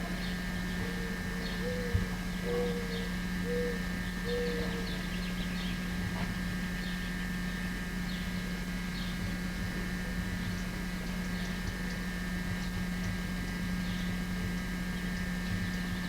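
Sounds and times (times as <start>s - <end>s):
small birds chirping: 0.0s - 6.0s, 6.6s - 9.4s, 10.2s - 16.0s
dove cooing: 0.0s - 6.9s
steady low hum: 0.0s - 16.0s.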